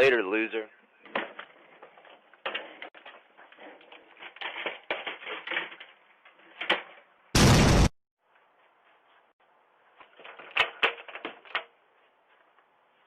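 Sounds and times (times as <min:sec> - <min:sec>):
knocks rattles and scrapes: 0:01.0 - 0:07.1.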